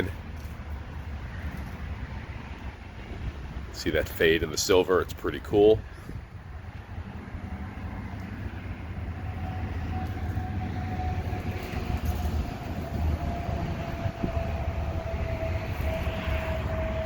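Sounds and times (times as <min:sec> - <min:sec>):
large vehicle rumble: 0:00.0 - 0:17.0.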